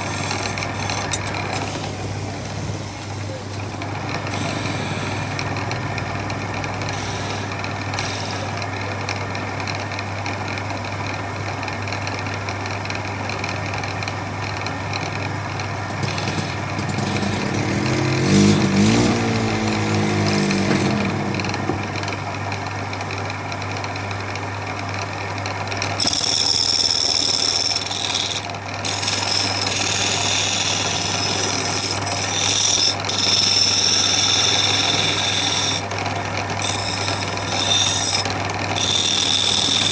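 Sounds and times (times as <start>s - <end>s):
high-pitched whirring: 26.0s - 35.9s, 36.6s - 39.9s.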